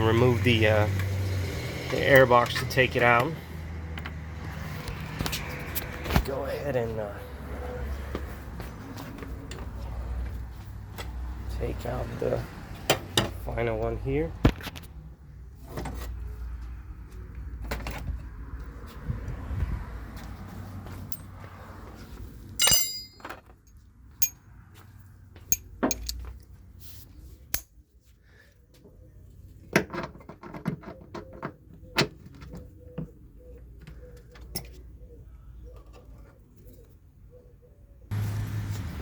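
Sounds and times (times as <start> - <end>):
loud ringing clink: 22.6 - 23.4, 24.2 - 24.4, 25.5 - 26.2
metallic clinks of hand tools: 22.6 - 23.4, 25.5 - 26.2.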